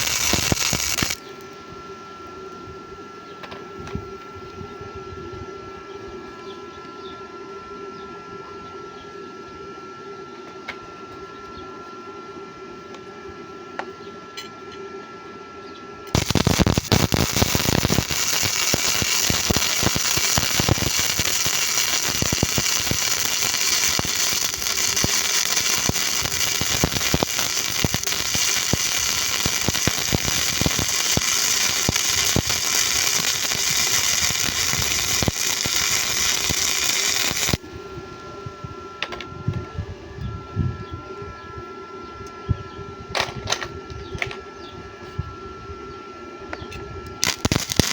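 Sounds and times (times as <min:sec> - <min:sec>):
welding arc crackling: 0:00.0 - 0:01.5, 0:16.1 - 0:37.6, 0:47.2 - 0:47.9
welder hum: 0:00.0 - 0:02.6, 0:16.1 - 0:41.2, 0:46.5 - 0:47.9.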